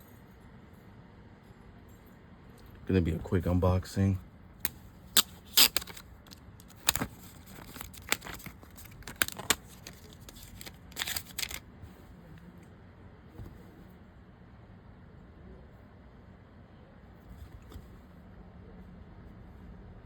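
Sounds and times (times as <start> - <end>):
packaging clicks and crinkling: 4.7 - 11.6
packaging rustling: 4.7 - 11.6.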